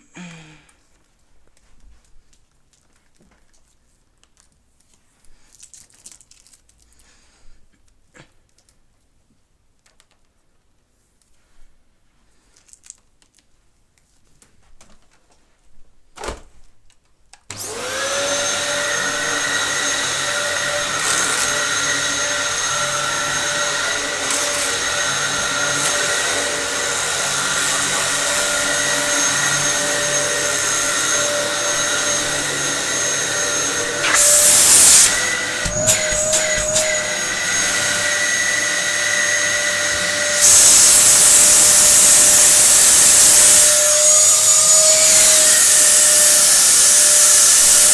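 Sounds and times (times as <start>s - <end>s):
vacuum cleaner whine: 17.5s - 47.9s.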